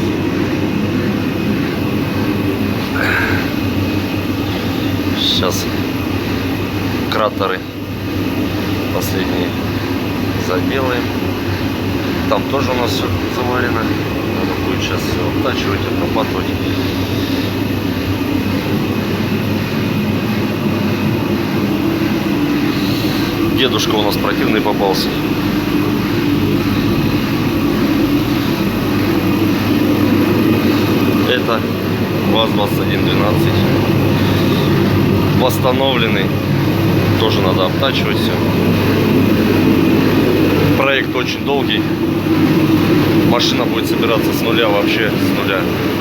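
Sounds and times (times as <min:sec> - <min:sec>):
low machine drone: 0:00.0 - 0:46.0.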